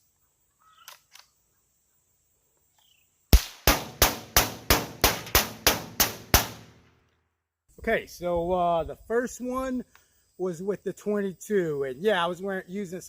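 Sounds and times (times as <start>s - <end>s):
rifle shots: 3.4s - 6.9s.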